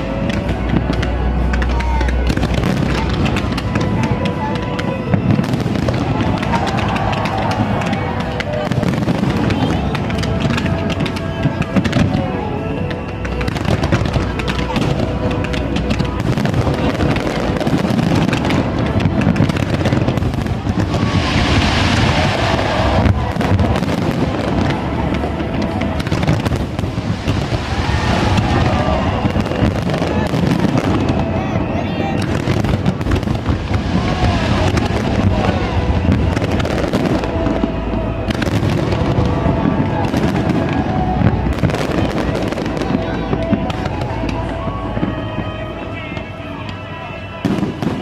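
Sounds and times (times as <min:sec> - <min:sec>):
fireworks booming: 0:00.0 - 0:48.0
sharp fireworks cracks: 0:00.0 - 0:48.0
fireworks hiss: 0:14.6 - 0:31.3.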